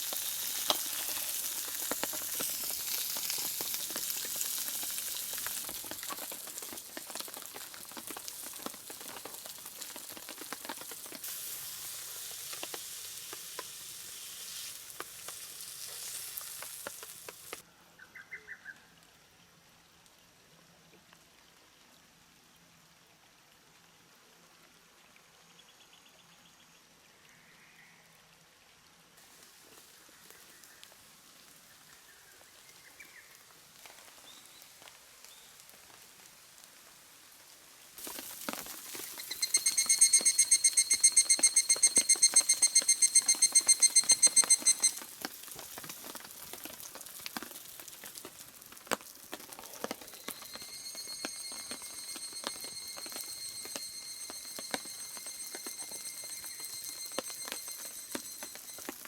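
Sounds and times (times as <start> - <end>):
fire crackles and pops: 0.0 - 17.6, 33.2 - 59.0
steak sizzling over campfire: 0.0 - 17.6, 29.2 - 59.0
faint forest ambience: 0.0 - 59.0.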